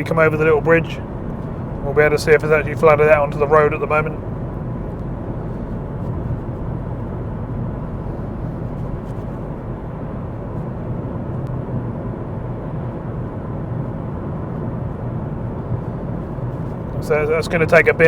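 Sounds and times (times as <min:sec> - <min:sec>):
car road and engine noise: 0:00.0 - 0:18.0.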